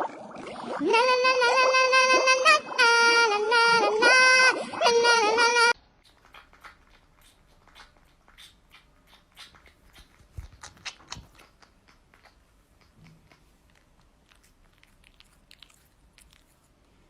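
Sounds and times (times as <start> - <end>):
pet chewing and crunching: 6.0 - 17.0.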